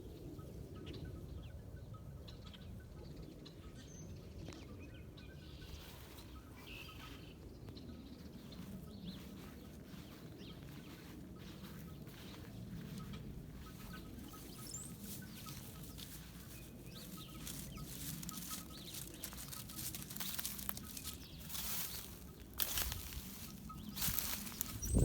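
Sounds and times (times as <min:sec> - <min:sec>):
wind buffeting microphone: 0:06.9 - 0:25.0.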